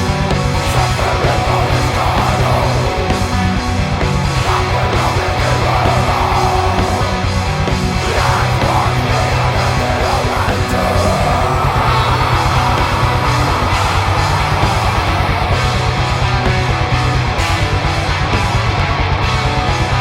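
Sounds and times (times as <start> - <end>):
harsh shouted vocal: 0.0 - 3.6, 4.2 - 16.4
distorted guitars and bass: 0.0 - 20.0
fast drumming: 0.0 - 20.0.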